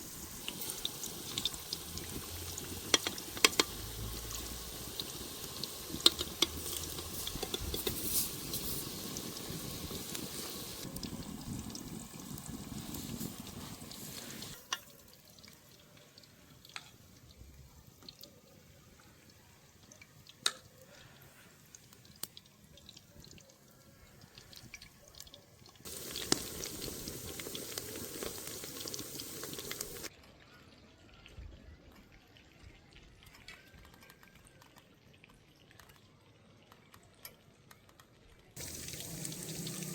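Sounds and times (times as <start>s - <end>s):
food sizzling in hot oil: 0.0s - 18.2s, 25.8s - 30.1s, 38.6s - 39.9s.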